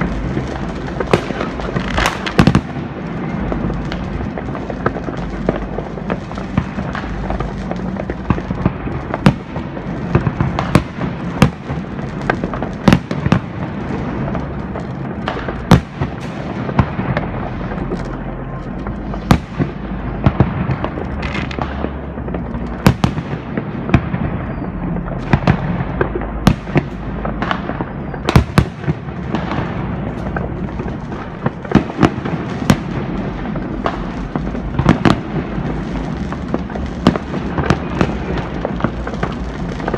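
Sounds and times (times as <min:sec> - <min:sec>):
firework bangs: 0:00.0 - 0:39.9
fireworks crackling: 0:00.0 - 0:39.9.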